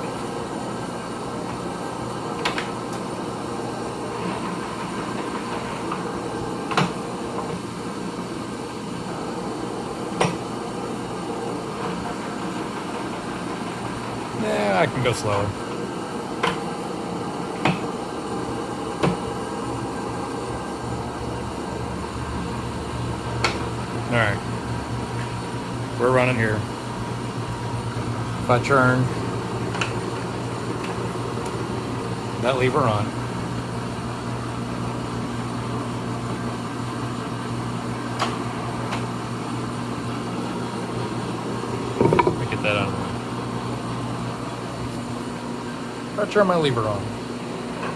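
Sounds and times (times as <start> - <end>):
lathe running: 41.0 - 43.2
sharp metallic clunks: 42.0 - 42.6.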